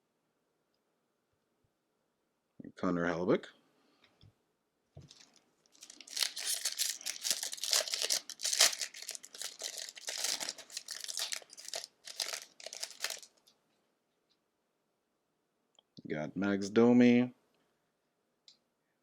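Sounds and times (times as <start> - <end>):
foil wrapper tearing and crinkling: 5.1 - 13.4.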